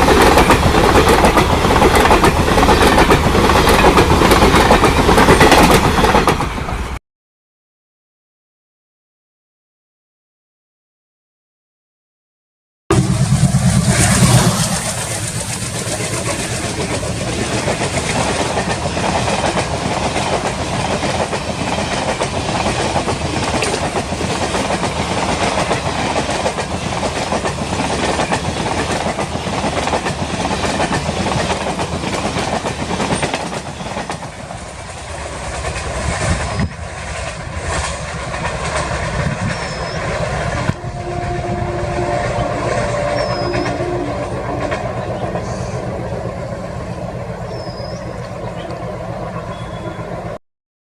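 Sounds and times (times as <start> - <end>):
train wheels rattling over track: 0.0 - 7.0, 12.9 - 50.4
heavy low rumble: 12.9 - 17.6.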